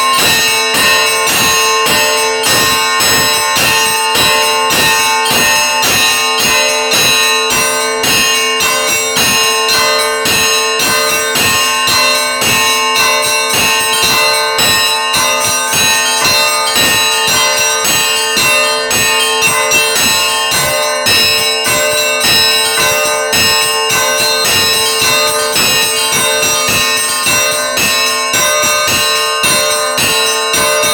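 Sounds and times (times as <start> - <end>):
church bells ringing: 0.0 - 30.9.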